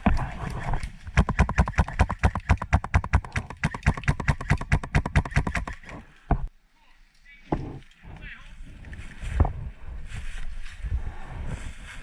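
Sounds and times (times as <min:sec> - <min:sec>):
airsoft gun firing rapidly: 0:01.2 - 0:05.8.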